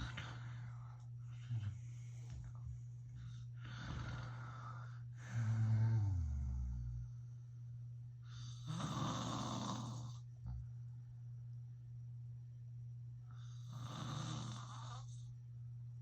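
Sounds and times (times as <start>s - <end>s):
soft noisy breaths: 0.0s - 10.4s, 13.1s - 15.6s
man snoring: 3.6s - 7.1s, 8.5s - 10.2s, 13.6s - 15.2s.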